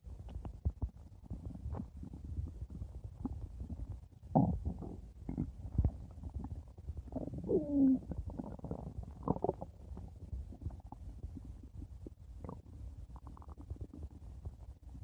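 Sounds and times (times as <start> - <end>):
stomach growling: 0.2 - 15.0.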